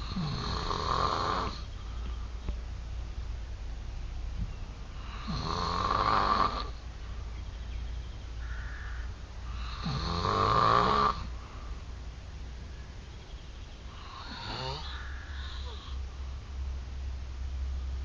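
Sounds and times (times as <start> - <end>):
man snoring loudly: 0.0 - 1.6, 5.0 - 6.8, 9.6 - 11.3, 14.0 - 16.0.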